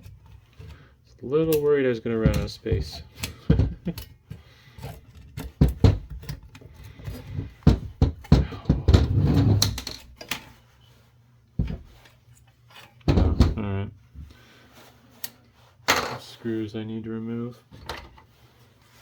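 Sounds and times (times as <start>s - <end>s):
rattling handling noise: 1.4s - 10.6s.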